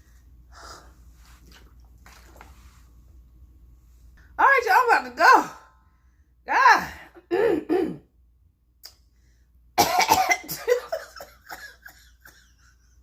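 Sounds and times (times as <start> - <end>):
woman coughing: 7.3 - 8.1, 9.8 - 12.4.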